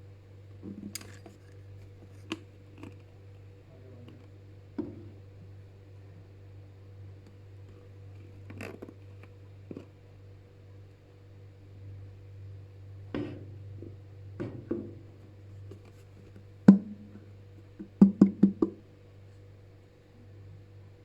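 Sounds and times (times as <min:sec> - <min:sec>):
hard objects knocking: 0:16.7 - 0:17.2, 0:17.8 - 0:18.8.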